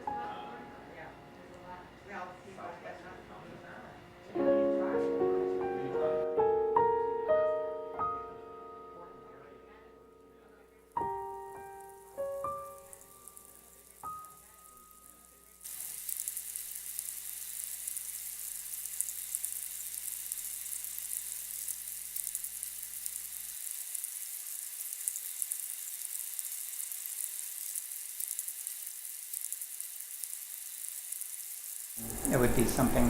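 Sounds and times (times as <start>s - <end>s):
beetles crawling and feeding crackling: 11.5s - 33.0s.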